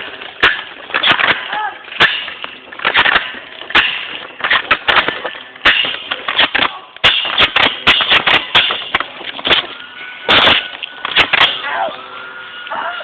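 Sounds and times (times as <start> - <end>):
airsoft guns firing: 0.4 - 11.6.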